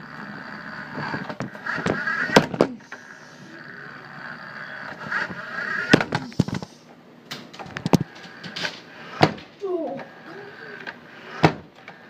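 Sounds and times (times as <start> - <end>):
toy truck electric motor whining: 0.0 - 6.9, 7.7 - 12.0
toy truck knocking into things: 1.4 - 2.8.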